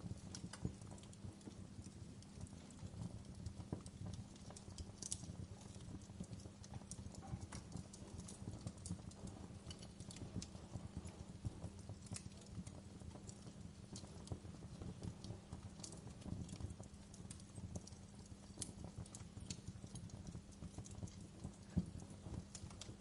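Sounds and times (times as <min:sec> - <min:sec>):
low rumble of flames: 0:00.0 - 0:23.0
wood fire crackling and popping: 0:00.0 - 0:23.0.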